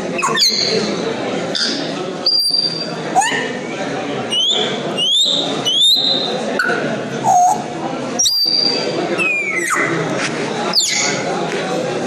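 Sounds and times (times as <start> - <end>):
background murmur: 0.0 - 12.0
parrot whistling: 4.3 - 6.3.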